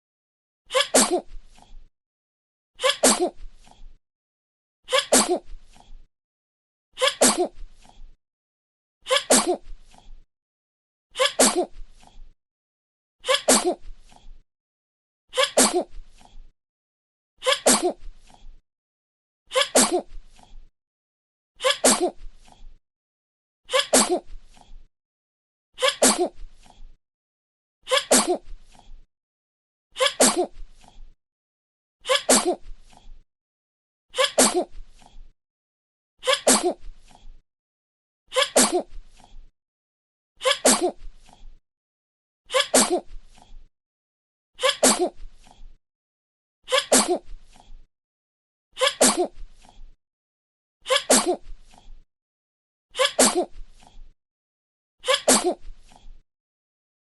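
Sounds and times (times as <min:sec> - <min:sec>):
baby sneezing: 0:00.8 - 0:01.3, 0:02.8 - 0:03.3, 0:04.9 - 0:05.4, 0:07.0 - 0:07.5, 0:09.1 - 0:09.6, 0:11.2 - 0:11.7, 0:13.3 - 0:13.8, 0:15.4 - 0:15.9, 0:17.5 - 0:18.0, 0:19.6 - 0:20.1, 0:21.6 - 0:22.1, 0:23.8 - 0:24.2, 0:25.8 - 0:26.3, 0:27.9 - 0:28.4, 0:30.0 - 0:30.5, 0:32.1 - 0:32.6, 0:34.2 - 0:34.7, 0:36.2 - 0:36.8, 0:38.3 - 0:38.9, 0:40.4 - 0:41.0, 0:42.5 - 0:43.1, 0:44.6 - 0:45.2, 0:46.7 - 0:47.2, 0:48.8 - 0:49.4, 0:50.9 - 0:51.4, 0:53.0 - 0:53.5, 0:55.0 - 0:55.6.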